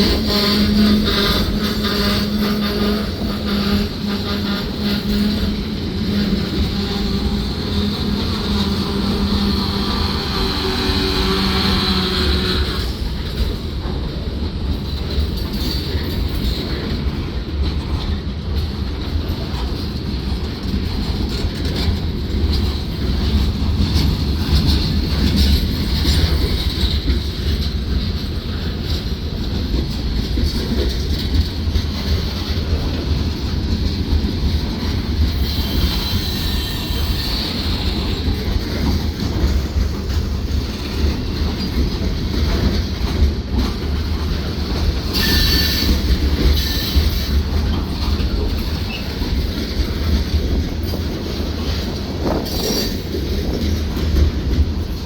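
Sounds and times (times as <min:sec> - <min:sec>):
high wheel squeal: 0:00.0 - 0:13.0, 0:35.3 - 0:38.5, 0:45.1 - 0:47.4
train wheels rumbling on rails: 0:00.0 - 0:55.0.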